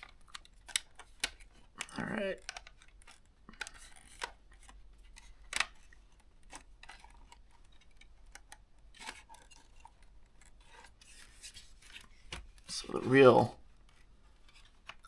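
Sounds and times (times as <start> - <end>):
plastic pry tool clicks and scrapes: 0.0 - 11.0.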